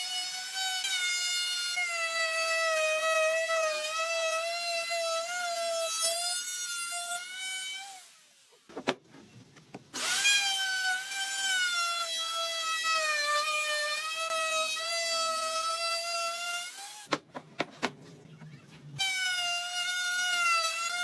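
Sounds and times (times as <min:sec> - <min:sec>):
power tool motor whine: 0:10.0 - 0:12.4.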